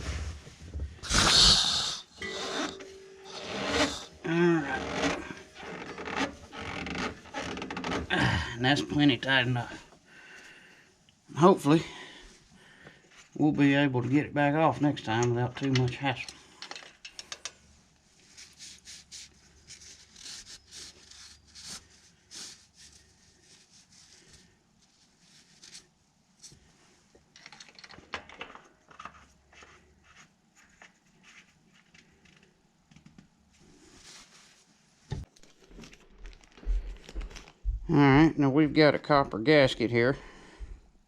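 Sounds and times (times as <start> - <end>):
small clicks and taps of tools: 15.2 - 17.6.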